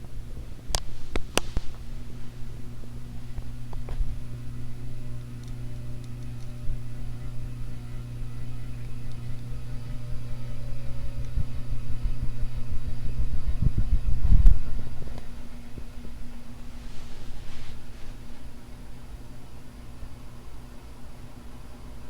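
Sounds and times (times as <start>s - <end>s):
air buffeting microphone: 0.0s - 5.2s, 9.4s - 18.6s
ceiling fan motor hum: 0.0s - 22.0s.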